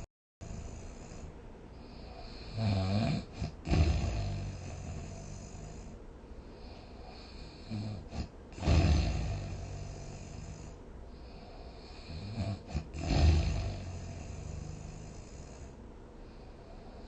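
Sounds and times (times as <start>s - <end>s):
person snoring: 1.9s - 6.0s, 6.7s - 15.8s.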